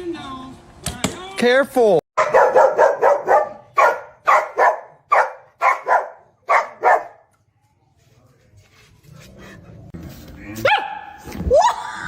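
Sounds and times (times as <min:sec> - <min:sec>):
dog barking: 0:02.2 - 0:07.3, 0:10.6 - 0:11.2.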